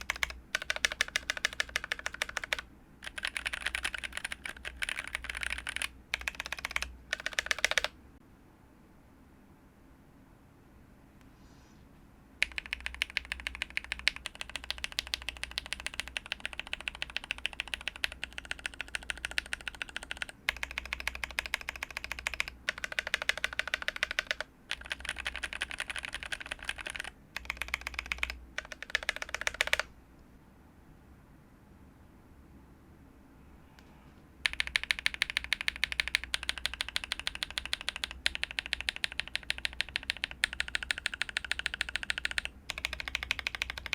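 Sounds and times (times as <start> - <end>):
fast typing on mechanical keyboard: 0.0 - 8.0, 12.4 - 29.9, 34.4 - 43.9.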